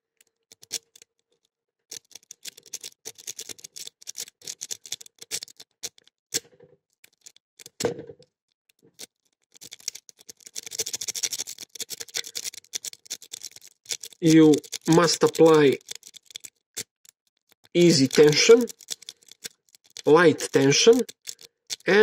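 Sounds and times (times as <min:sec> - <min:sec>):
lock pick scraping in padlock: 0:00.4 - 0:01.2, 0:01.9 - 0:06.4, 0:07.0 - 0:07.8, 0:08.9 - 0:21.9
pins clicking metallically: 0:01.9 - 0:06.0, 0:09.0 - 0:22.0.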